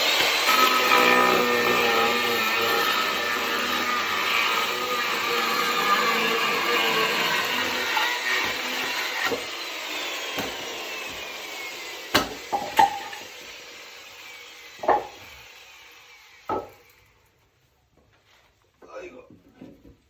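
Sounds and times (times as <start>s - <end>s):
chainsaw cutting wood: 0.0s - 17.4s
wood pieces knocking: 12.2s - 13.2s, 14.8s - 15.2s, 16.5s - 16.8s.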